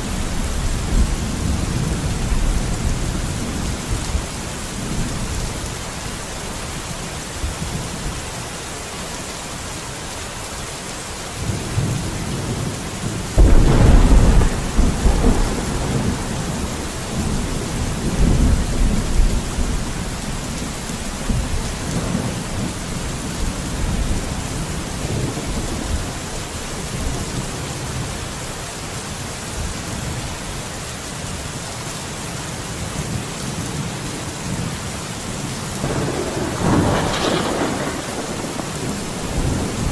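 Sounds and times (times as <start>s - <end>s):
steady rain: 0.0s - 39.9s
rolling thunder: 11.7s - 28.1s, 35.8s - 39.9s.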